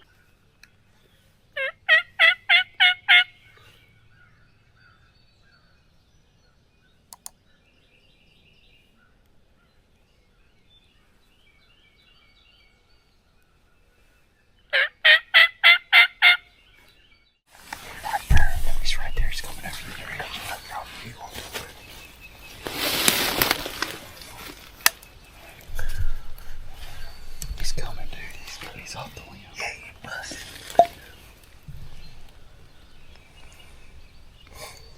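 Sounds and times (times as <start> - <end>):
turkey yelps: 1.6 - 3.3, 14.7 - 16.4
small birds chirping: 3.3 - 14.8, 16.3 - 34.9
click: 7.1 - 7.4.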